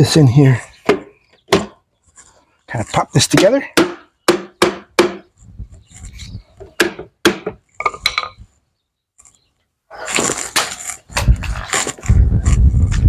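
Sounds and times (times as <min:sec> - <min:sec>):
sharp wooden knocks: 0:00.8 - 0:01.8, 0:03.3 - 0:05.4, 0:06.6 - 0:08.2.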